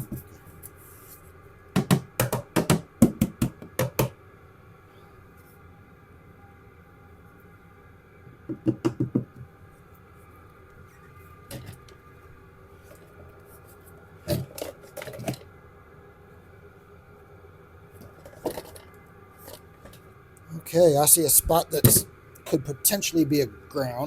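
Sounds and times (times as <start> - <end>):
faint steady hum: 0.0 - 24.0
hands knocking tools: 1.8 - 4.1.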